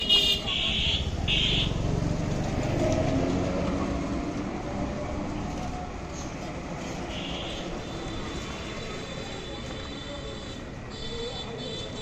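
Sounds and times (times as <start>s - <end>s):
engine rumbling past: 1.0s - 7.1s.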